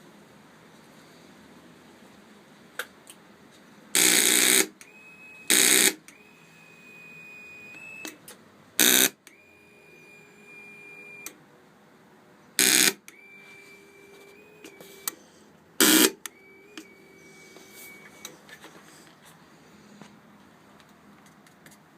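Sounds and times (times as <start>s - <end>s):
faint high whine: 4.0s - 8.2s, 8.8s - 11.4s, 12.5s - 20.3s
starter solenoid buzzing: 4.0s - 8.2s, 8.8s - 11.4s, 12.6s - 15.2s, 15.8s - 18.3s.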